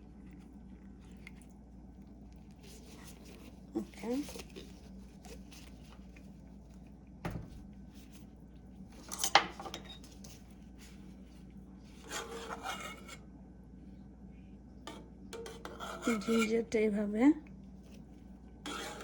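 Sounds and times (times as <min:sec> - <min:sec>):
cutlery clinking: 0:09.0 - 0:10.1
cutlery scraping: 0:09.0 - 0:10.1, 0:12.0 - 0:13.2, 0:14.9 - 0:16.5, 0:18.7 - 0:19.0.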